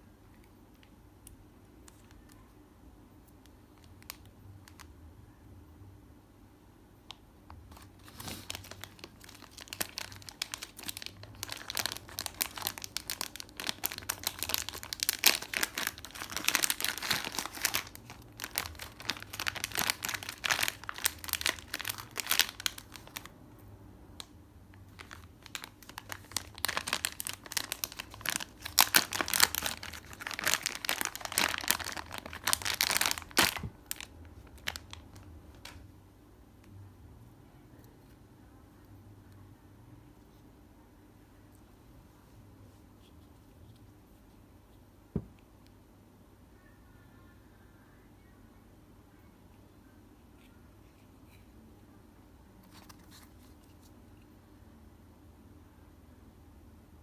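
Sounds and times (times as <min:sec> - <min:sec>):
packaging crinkling and tearing: 0:07.5 - 0:23.3, 0:24.2 - 0:35.8, 0:52.6 - 0:53.9.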